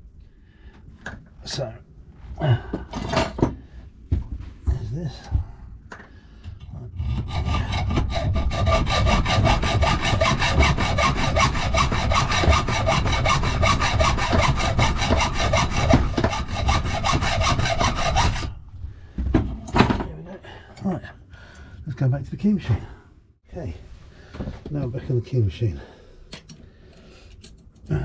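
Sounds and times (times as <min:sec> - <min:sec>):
hacksaw cutting metal: 0:07.0 - 0:18.5.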